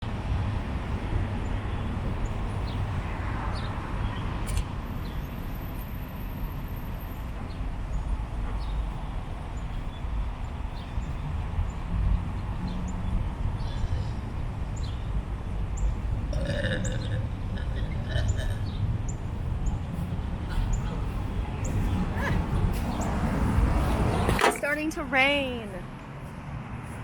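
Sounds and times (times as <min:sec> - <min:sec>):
steady low rumble: 0:07.7 - 0:25.9.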